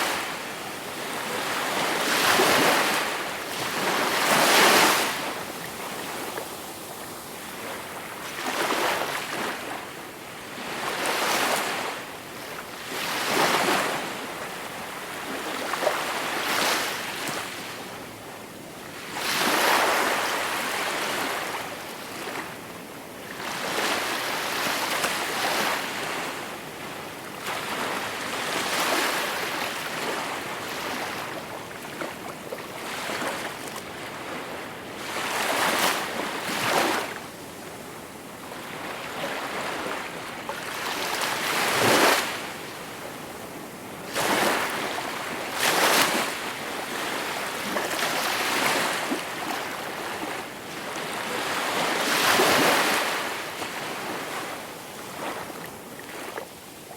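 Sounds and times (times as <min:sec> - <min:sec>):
sea waves breaking on shore: 0:38.4 - 0:56.9.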